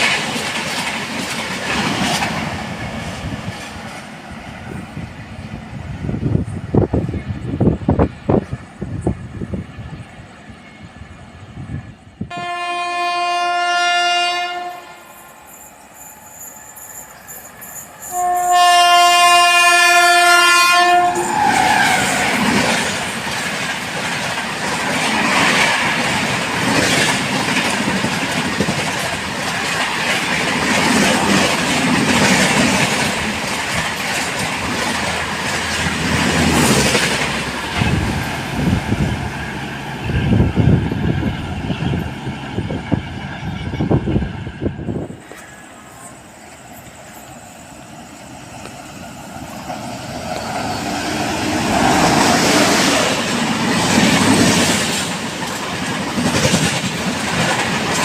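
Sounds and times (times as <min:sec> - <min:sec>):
train passing with wheel clatter: 0:00.0 - 0:58.0
train horn blast: 0:12.3 - 0:15.1, 0:18.0 - 0:22.2.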